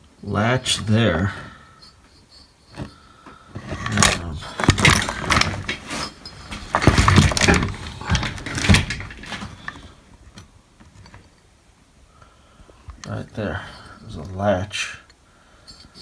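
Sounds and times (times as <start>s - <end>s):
metal chain hoist parts clanking: 3.6s - 10.0s.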